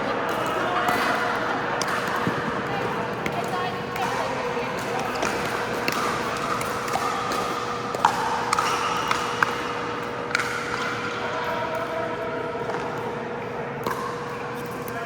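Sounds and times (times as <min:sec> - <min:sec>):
steady hum: 0:00.0 - 0:15.0
ball bouncing: 0:00.8 - 0:09.7
paddles hitting plastic ball: 0:01.8 - 0:09.7.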